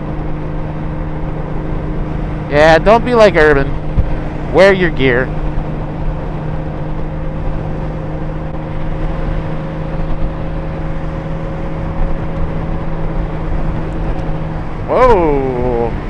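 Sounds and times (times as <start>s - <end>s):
motorcycle engine cruising: 0.0s - 16.0s
wind and road noise: 0.0s - 16.0s.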